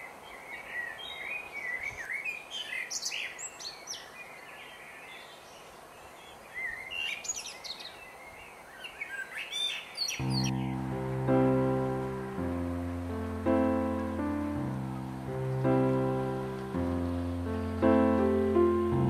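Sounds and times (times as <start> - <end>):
faint outdoor background: 0.0 - 19.0
small birds chirping: 0.0 - 19.0
music with sustained notes: 10.2 - 19.0.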